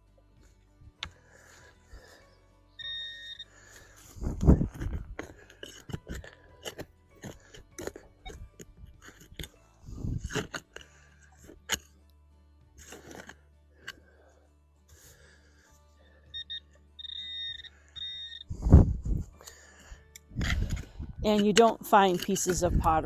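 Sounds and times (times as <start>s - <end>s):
metal detector beep: 2.8s - 3.5s, 16.3s - 18.5s.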